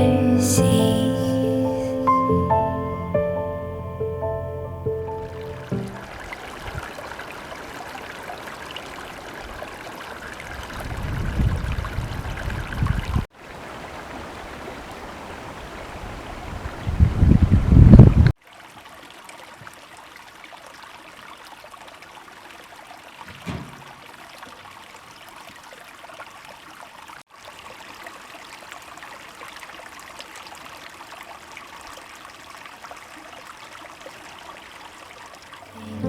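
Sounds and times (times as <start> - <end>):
stream rushing: 0.0 - 17.9, 35.6 - 36.0.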